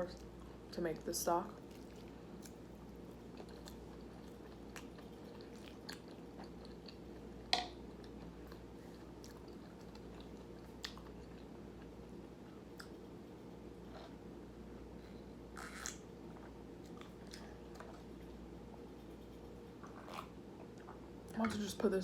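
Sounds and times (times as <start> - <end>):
person chewing food: 1.6 - 13.1, 14.8 - 21.1.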